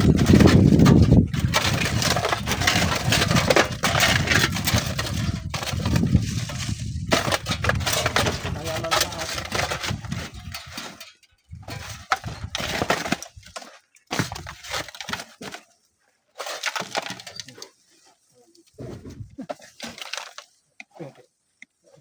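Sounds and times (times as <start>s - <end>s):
sand and stones sliding: 0.0s - 11.0s.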